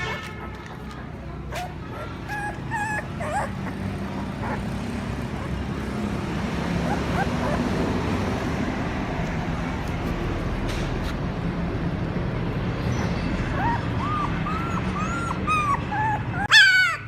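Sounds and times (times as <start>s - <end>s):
puppy whimpering: 1.5s - 7.9s, 13.5s - 17.0s.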